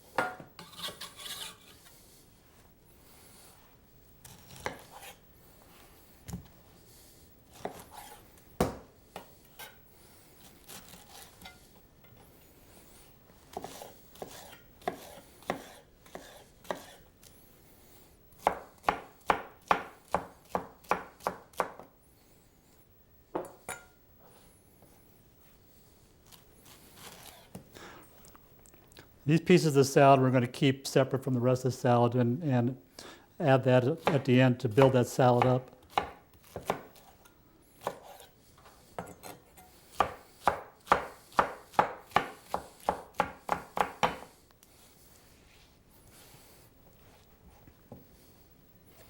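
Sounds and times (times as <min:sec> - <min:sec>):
knife chopping on cutting board: 0:07.5 - 0:09.3, 0:13.5 - 0:17.0, 0:18.4 - 0:21.8, 0:34.0 - 0:37.1, 0:37.8 - 0:38.3, 0:40.0 - 0:44.3.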